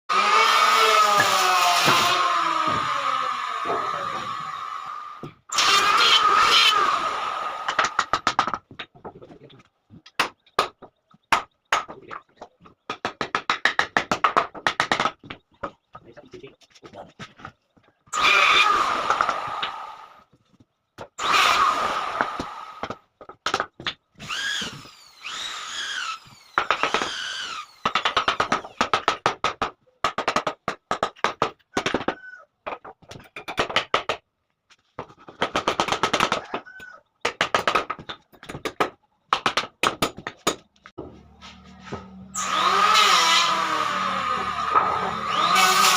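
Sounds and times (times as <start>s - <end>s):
power drill bursts: 0.3s - 7.7s, 24.2s - 27.8s.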